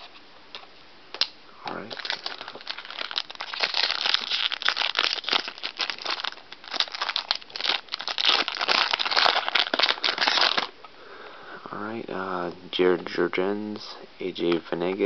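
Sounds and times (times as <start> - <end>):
foil wrapper crinkling and tearing: 1.8 - 10.7.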